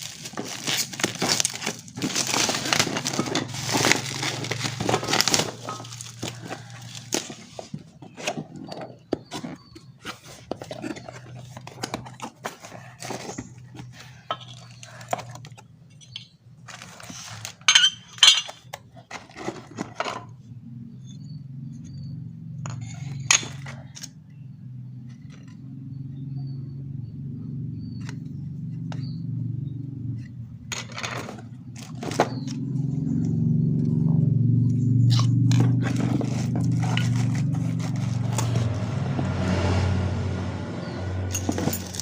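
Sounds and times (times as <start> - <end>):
angle grinder parts clinking: 0.0 - 9.6, 10.4 - 18.8, 35.1 - 39.0, 41.2 - 42.0.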